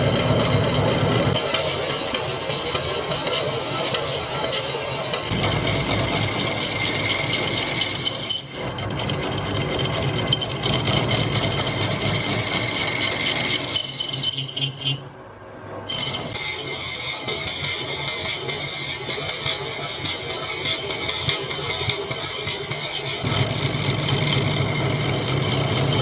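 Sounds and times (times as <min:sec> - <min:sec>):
lathe rattling: 0:00.0 - 0:15.1, 0:15.9 - 0:26.0
lathe running: 0:00.0 - 0:15.1, 0:15.9 - 0:26.0.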